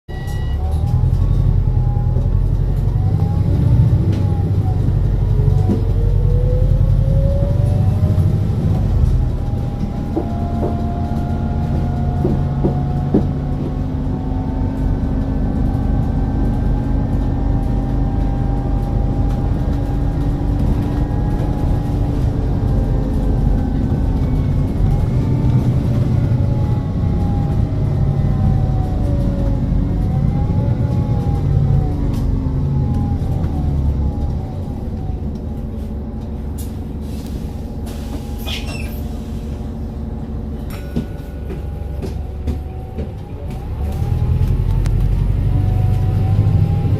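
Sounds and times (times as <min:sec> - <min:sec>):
bus engine drone: 0:00.1 - 0:46.9.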